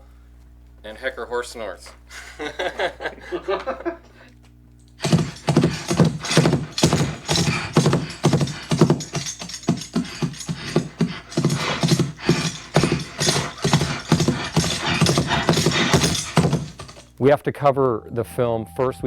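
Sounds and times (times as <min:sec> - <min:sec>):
mouth-made horse snorts: 0:05.0 - 0:17.0
bridle jingle: 0:05.0 - 0:17.1
clip-clop hoofbeats: 0:05.0 - 0:17.1.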